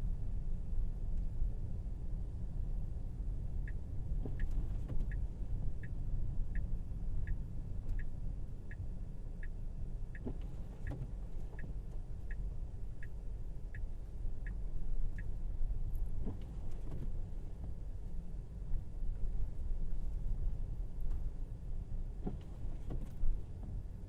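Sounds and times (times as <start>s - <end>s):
road and tyre rumble: 0.0s - 24.0s
light regular ticking: 3.6s - 16.8s.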